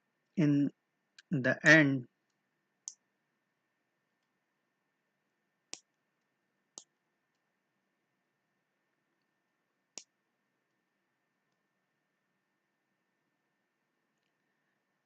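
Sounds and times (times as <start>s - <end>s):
computer mouse clicks: 5.7s - 6.0s, 9.9s - 10.2s.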